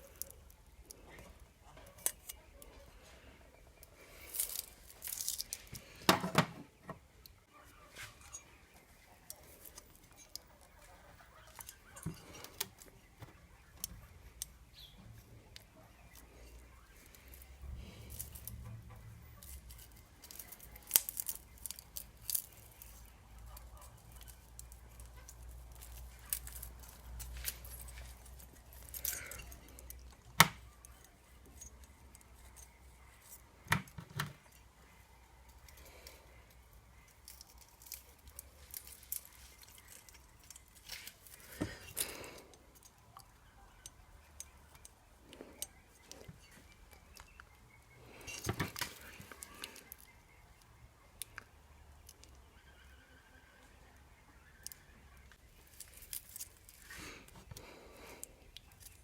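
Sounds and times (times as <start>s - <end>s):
clinks of hand tools and metal parts: 23.9s - 34.6s, 48.2s - 50.1s.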